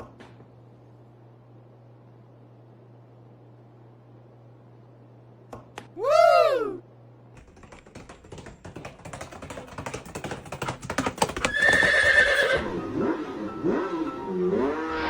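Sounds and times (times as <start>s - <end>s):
rapid clicks or taps: 7.4s - 12.5s.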